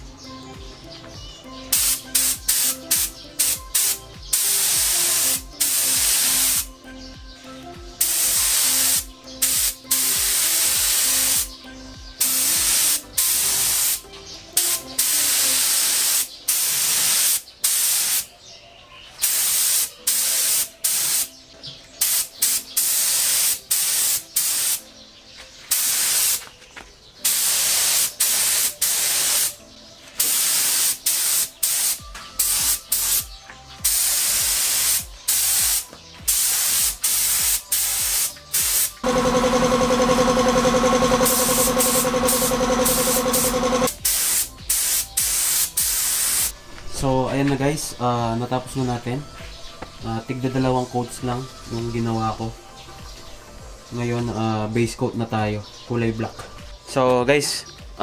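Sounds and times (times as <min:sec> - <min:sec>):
spray gun hissing bursts: 0:01.7 - 0:06.7, 0:08.0 - 0:11.5, 0:12.2 - 0:14.0, 0:14.6 - 0:18.3, 0:19.2 - 0:21.3, 0:22.0 - 0:24.8, 0:25.7 - 0:26.4, 0:27.3 - 0:29.6, 0:30.2 - 0:33.2, 0:33.8 - 0:46.5.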